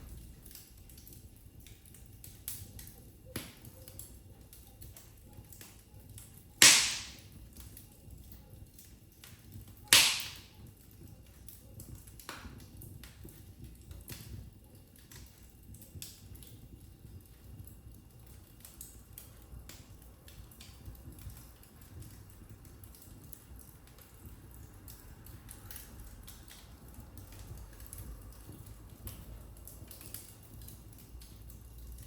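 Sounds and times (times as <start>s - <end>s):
wood fire crackling: 0.0s - 32.0s
fire popping sharply: 6.6s - 7.5s, 9.8s - 10.7s.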